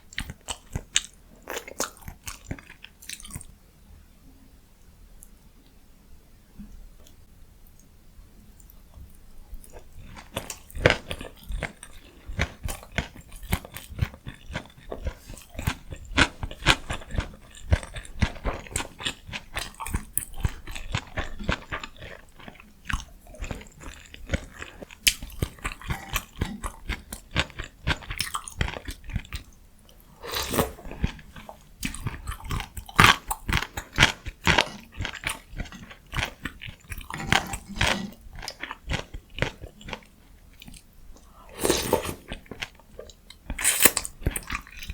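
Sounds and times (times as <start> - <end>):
person chewing food: 0.1 - 3.5, 8.6 - 44.9
slurping: 30.1 - 31.4, 41.4 - 42.5.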